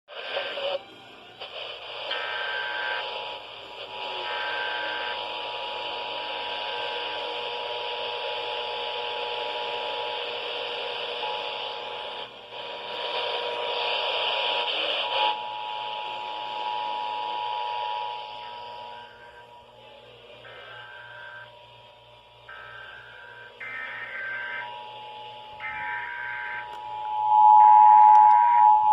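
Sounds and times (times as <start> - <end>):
radio static: 0.1 - 0.8, 1.4 - 8.2, 10.4 - 21.6, 22.5 - 28.9
short data bursts: 22.5 - 28.9
two-tone alert signal: 25.6 - 28.9.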